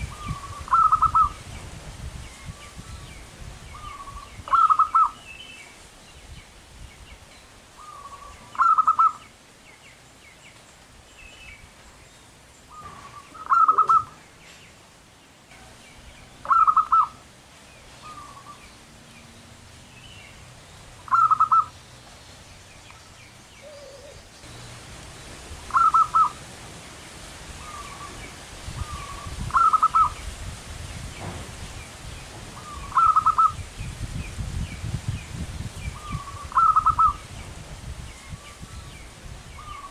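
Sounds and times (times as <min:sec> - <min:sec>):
dove cooing: 0:00.1 - 0:01.4, 0:03.8 - 0:05.2, 0:07.8 - 0:09.2, 0:12.7 - 0:14.2, 0:16.4 - 0:17.2, 0:21.1 - 0:21.7, 0:23.6 - 0:24.3, 0:25.7 - 0:26.4, 0:28.8 - 0:30.2, 0:32.6 - 0:33.6, 0:36.0 - 0:37.2.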